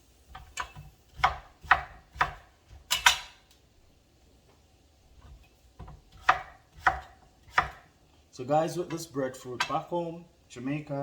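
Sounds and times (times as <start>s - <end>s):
knife chopping on cutting board: 0.3s - 3.3s, 5.2s - 7.9s.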